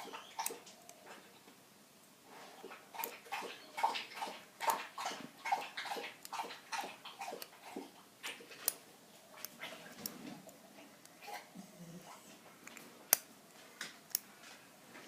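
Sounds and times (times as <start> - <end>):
dog lapping water: 2.6 - 8.6.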